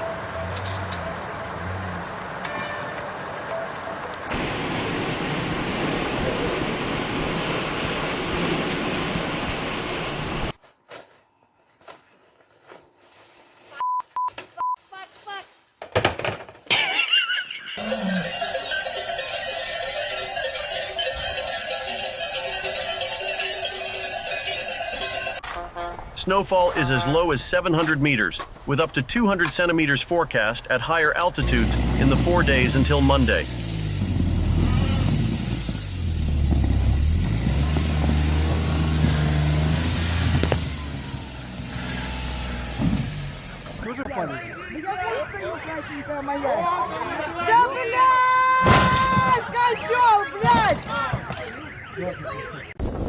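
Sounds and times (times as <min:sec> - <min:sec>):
livestock bells clanging: 0:00.0 - 0:04.2, 0:17.1 - 0:25.5, 0:26.2 - 0:37.0
vehicle engine running: 0:00.0 - 0:04.5, 0:29.3 - 0:43.9
road noise hiss: 0:00.0 - 0:10.5, 0:25.4 - 0:36.8.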